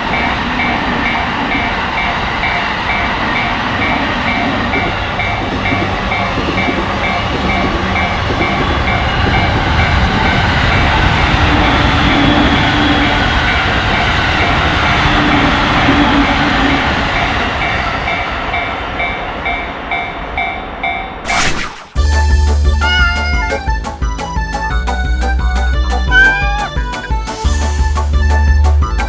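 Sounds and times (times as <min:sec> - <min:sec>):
railroad crossing bell clanging: 0:00.0 - 0:21.2
train rushing past: 0:00.0 - 0:24.8.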